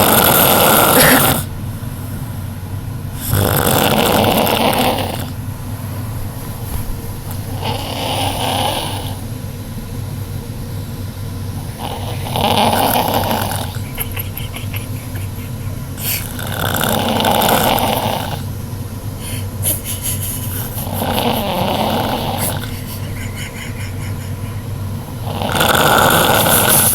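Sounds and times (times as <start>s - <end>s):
person snoring loudly: 0.0s - 1.5s, 3.2s - 5.4s, 7.5s - 9.2s, 11.7s - 18.5s, 20.4s - 26.9s.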